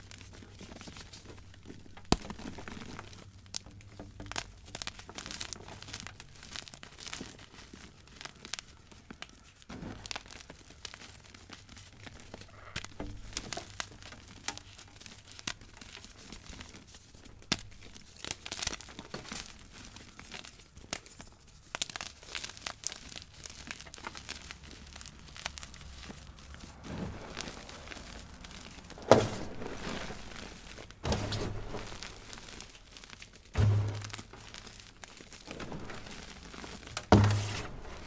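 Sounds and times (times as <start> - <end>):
chalk crushed by hand: 22.5 - 38.0.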